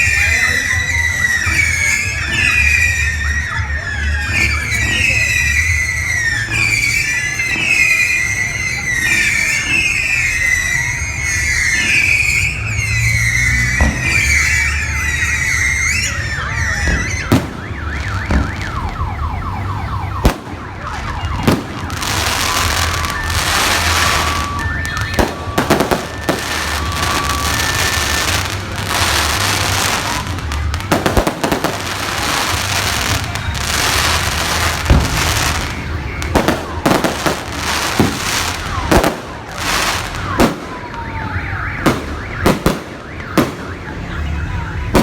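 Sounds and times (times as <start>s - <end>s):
falling firework whistles: 0.0s - 45.0s
fireworks crackling: 0.0s - 45.0s
car alarm beeping high and low: 12.6s - 45.0s
firework shells banging: 20.2s - 40.9s.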